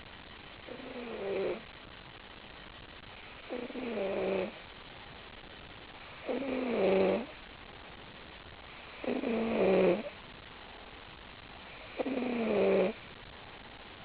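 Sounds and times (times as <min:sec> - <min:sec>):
buzzing snores: 0:00.7 - 0:01.7, 0:03.5 - 0:04.6, 0:06.2 - 0:07.4, 0:09.0 - 0:10.2, 0:11.8 - 0:13.0.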